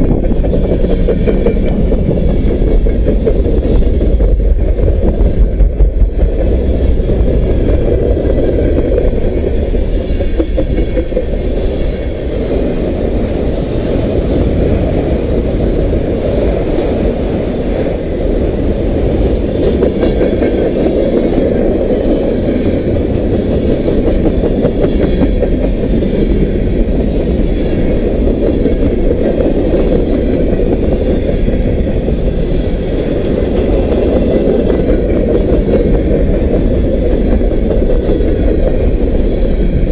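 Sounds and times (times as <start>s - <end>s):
freight train rumbling past: 0.0s - 39.9s
train wheels clacking over rails: 0.0s - 39.9s.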